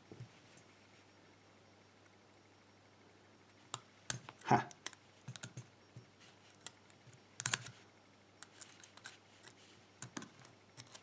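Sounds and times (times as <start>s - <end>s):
small metal clicks and scrapes: 4.1s - 5.7s, 6.5s - 7.8s, 8.4s - 11.0s.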